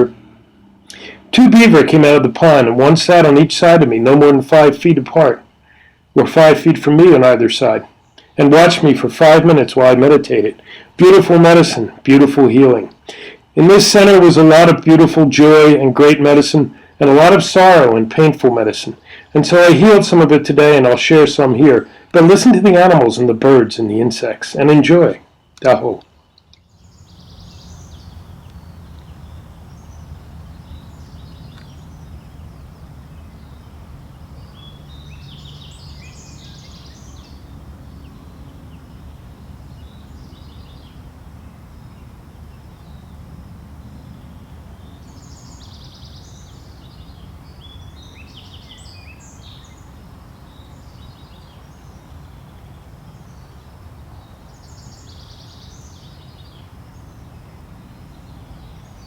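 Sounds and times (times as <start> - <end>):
songbirds chirping: 0.0 - 59.0
low background rumble: 25.6 - 59.0.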